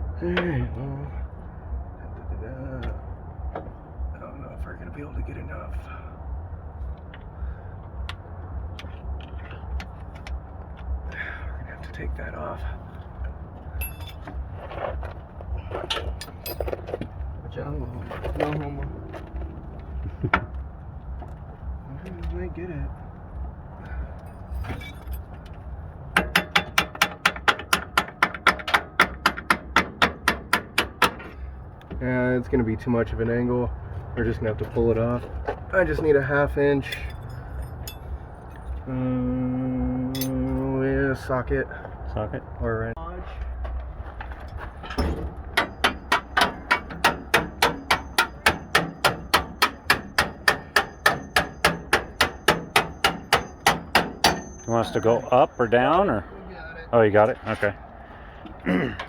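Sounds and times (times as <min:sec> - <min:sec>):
faint metallic ring: 0:13.7 - 0:14.3, 0:36.8 - 0:38.8, 0:40.1 - 0:40.7, 0:52.5 - 0:56.4
metal striking metal: 0:13.8 - 0:14.4, 0:36.8 - 0:38.7, 0:40.2 - 0:40.7, 0:44.8 - 0:56.1.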